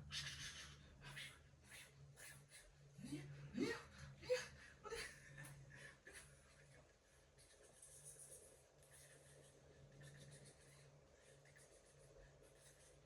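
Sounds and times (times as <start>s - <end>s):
faint low hum: 0.0s - 13.0s
kitten scratching and rustling: 6.8s - 13.0s.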